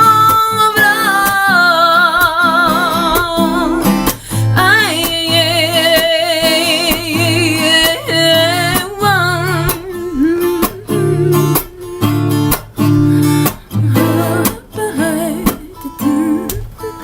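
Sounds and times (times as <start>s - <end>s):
person singing: 0.0s - 12.4s, 13.7s - 17.0s
acoustic guitar strumming: 0.0s - 17.0s.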